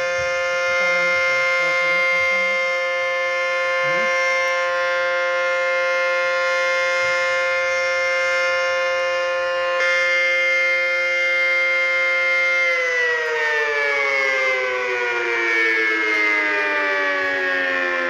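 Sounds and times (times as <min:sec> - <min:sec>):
tornado warning siren steady tone: 0:00.0 - 0:18.0.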